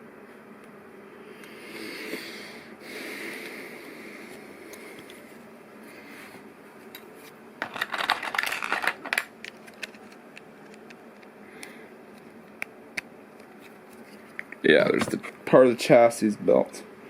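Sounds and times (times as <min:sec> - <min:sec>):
plastic pieces clicking and rattling: 0:07.6 - 0:11.0.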